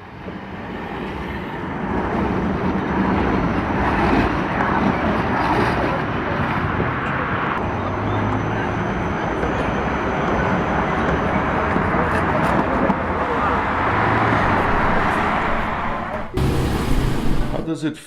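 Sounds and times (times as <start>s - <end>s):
city street traffic: 0.0s - 17.8s
low hum: 12.8s - 17.6s.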